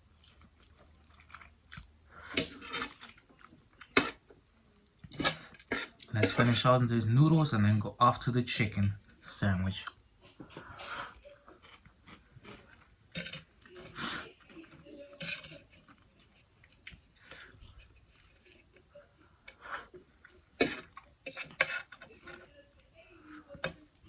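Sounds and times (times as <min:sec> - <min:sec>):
person chewing: 0:00.0 - 0:04.2, 0:09.8 - 0:14.7, 0:15.3 - 0:18.8.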